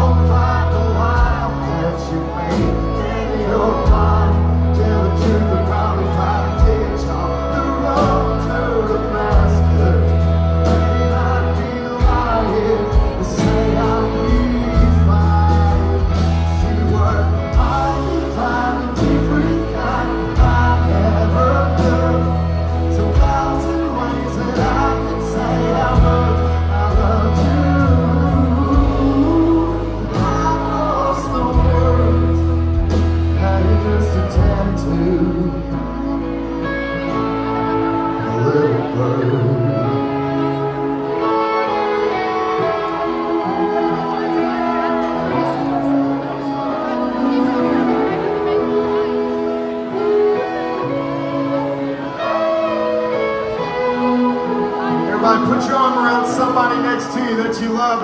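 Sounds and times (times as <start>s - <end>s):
people singing: 0.0s - 35.7s
live band playing: 0.0s - 58.0s.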